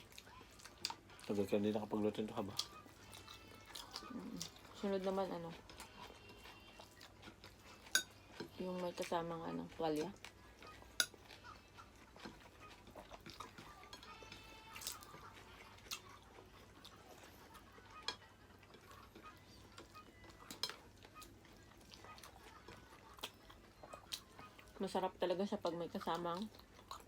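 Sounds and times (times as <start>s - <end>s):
cutlery clinking on plates: 7.8s - 8.5s, 11.0s - 11.4s, 19.8s - 20.9s.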